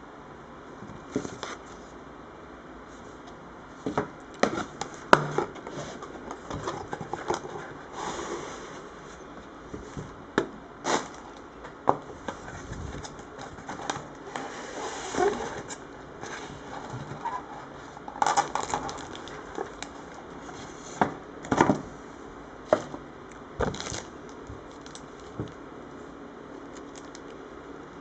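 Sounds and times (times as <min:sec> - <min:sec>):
packaging rustling: 0:15.1 - 0:20.8, 0:23.6 - 0:25.6, 0:26.6 - 0:27.4.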